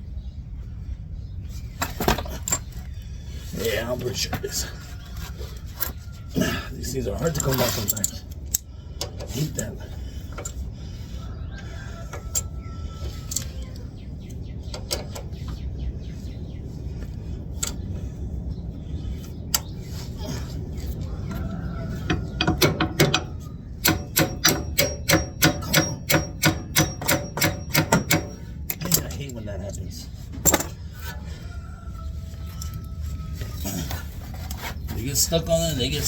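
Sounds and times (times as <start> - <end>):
hand tool clicking on metal: 22.4 - 29.4.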